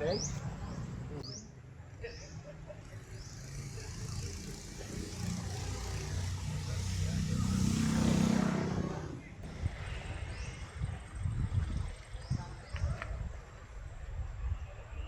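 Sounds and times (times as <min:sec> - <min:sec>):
vehicle passing close: 0:03.0 - 0:10.8.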